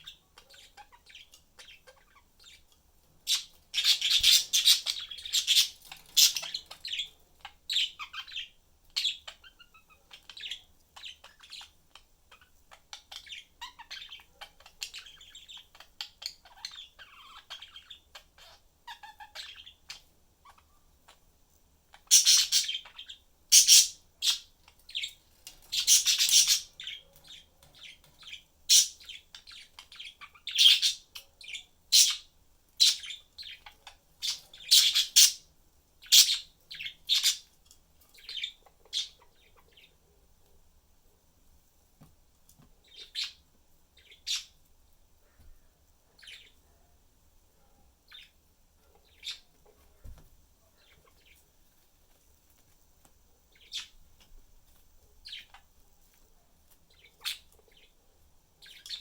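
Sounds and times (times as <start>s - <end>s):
budgerigars chirping: 0.0s - 20.7s, 22.0s - 37.5s, 38.2s - 39.9s, 42.8s - 43.4s, 44.0s - 44.6s, 46.2s - 46.6s.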